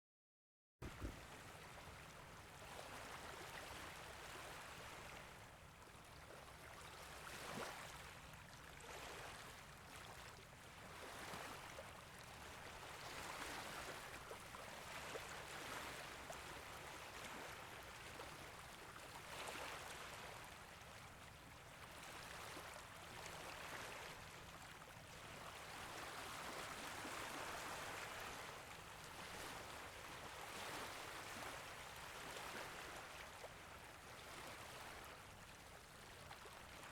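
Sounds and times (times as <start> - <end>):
small waves lapping on beach: 0.8 - 36.9.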